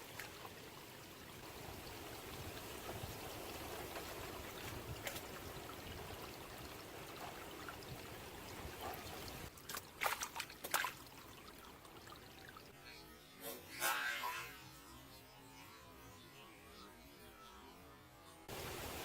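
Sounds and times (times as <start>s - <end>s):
water trickling: 0.0s - 12.8s, 18.5s - 19.0s.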